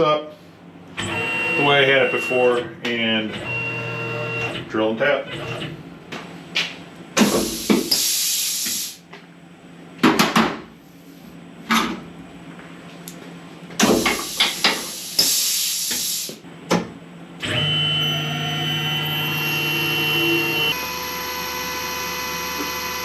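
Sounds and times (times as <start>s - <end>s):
compressed air hissing: 7.2s - 9.0s, 13.8s - 16.4s
machine motor humming: 17.4s - 23.0s.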